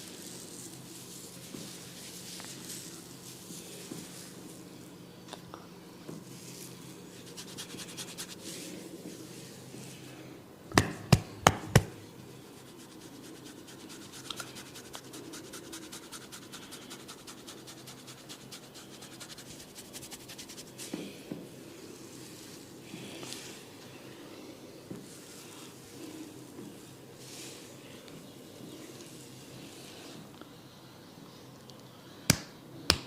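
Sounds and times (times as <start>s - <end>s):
fingers rubbing through hair: 0.0s - 4.6s, 6.2s - 10.0s, 12.4s - 21.0s.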